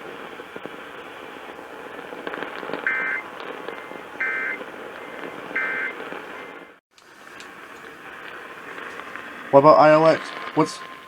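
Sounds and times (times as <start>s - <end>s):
radio static hiss: 0.0s - 11.0s
two-tone data chirps: 2.9s - 6.6s.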